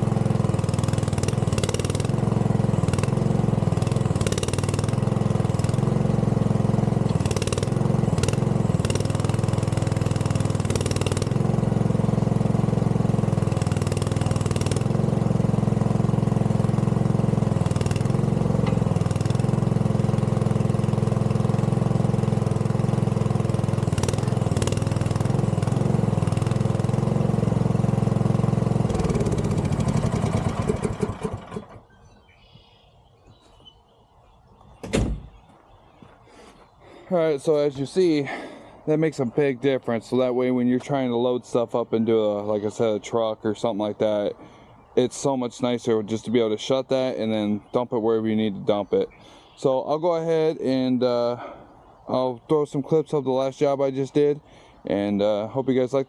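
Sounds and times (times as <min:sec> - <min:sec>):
engine winding down: 0:00.0 - 0:32.0
excavator engine running: 0:00.0 - 0:32.2.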